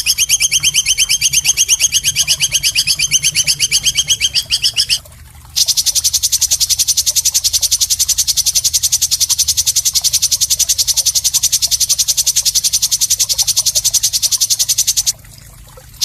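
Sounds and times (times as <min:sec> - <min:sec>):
bird song with high trill: 0:00.0 - 0:05.0.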